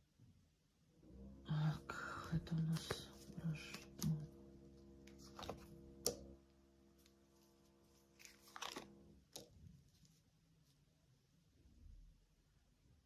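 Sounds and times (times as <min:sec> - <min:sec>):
faint steady hum: 0:00.0 - 0:13.0
cards clicking and rustling: 0:02.7 - 0:04.2, 0:05.1 - 0:06.2, 0:08.0 - 0:09.6.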